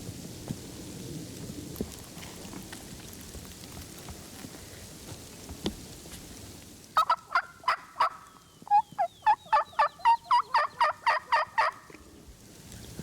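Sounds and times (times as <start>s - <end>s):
turkey yelps: 7.0s - 11.9s.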